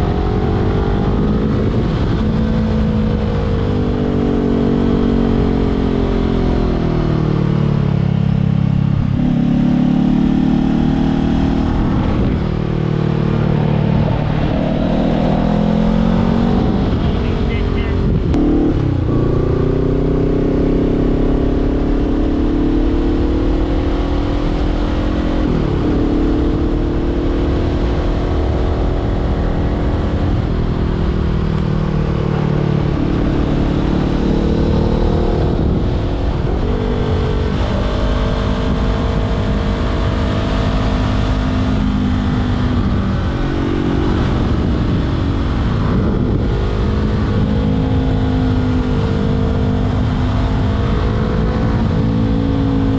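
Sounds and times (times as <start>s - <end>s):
motorcycle engine revving: 0.0s - 52.9s
wind rushing: 9.0s - 39.9s, 41.6s - 52.9s.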